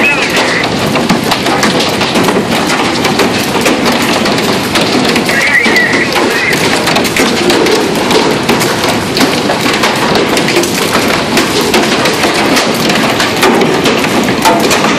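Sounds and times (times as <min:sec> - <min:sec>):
hail pelting a boat: 0:00.0 - 0:14.9.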